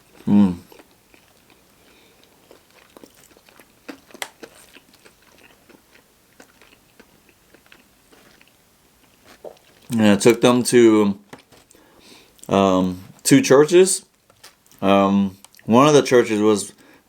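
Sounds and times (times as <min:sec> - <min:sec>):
chewing crunchy food: 0:00.0 - 0:10.6, 0:14.0 - 0:15.7.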